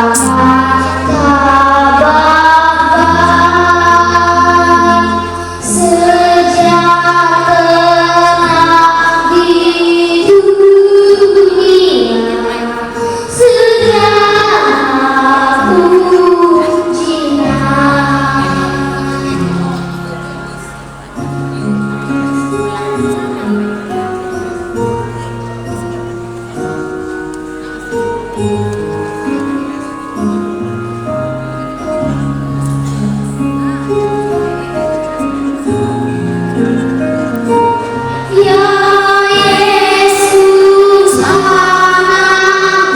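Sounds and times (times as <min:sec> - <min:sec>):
child singing slow song: 0:00.0 - 0:20.6, 0:37.4 - 0:42.9
instrumental sustained chords: 0:00.0 - 0:42.9
musical accompaniment: 0:00.0 - 0:42.9.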